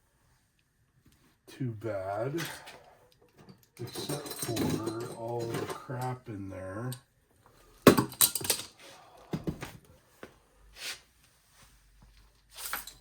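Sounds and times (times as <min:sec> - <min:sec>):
metal parts clattering and rattling: 0:03.3 - 0:06.2, 0:07.9 - 0:08.8.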